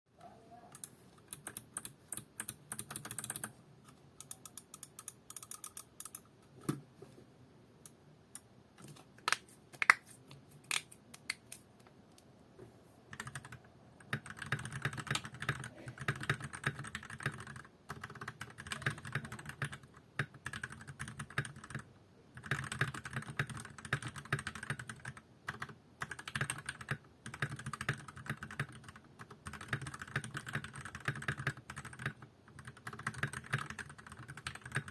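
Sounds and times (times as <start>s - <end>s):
mechanical keyboard typing: 0.7s - 3.5s, 4.2s - 6.3s, 13.1s - 34.9s.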